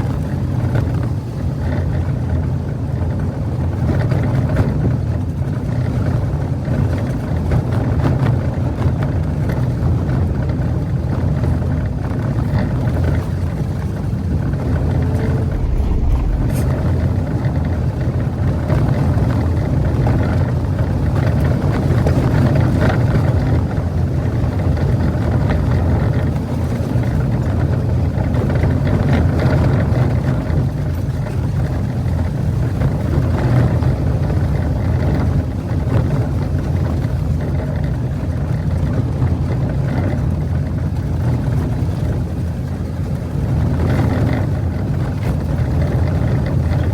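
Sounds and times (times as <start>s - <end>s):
car engine rumble: 15.0s - 17.3s
tyre and road noise: 15.2s - 17.0s.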